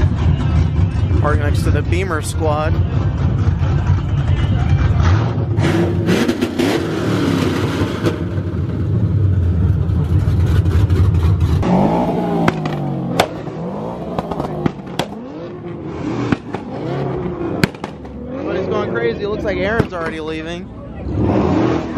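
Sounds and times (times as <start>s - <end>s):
car engine revving: 0.0s - 21.9s
sharp exhaust cracks: 11.5s - 18.5s.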